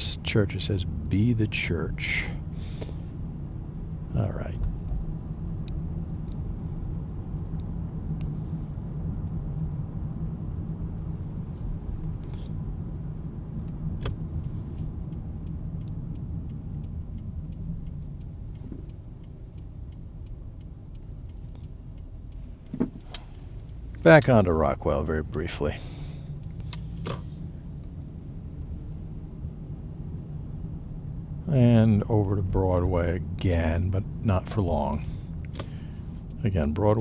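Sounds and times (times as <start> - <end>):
car engine and tyres rumbling: 0.0 - 37.0
faint clicks and ticks: 10.4 - 28.0, 33.0 - 37.0.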